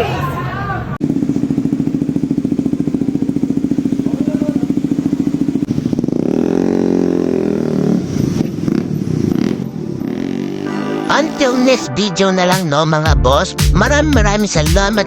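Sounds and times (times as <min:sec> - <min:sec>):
motorcycle engine idling and revving: 0:00.8 - 0:11.8.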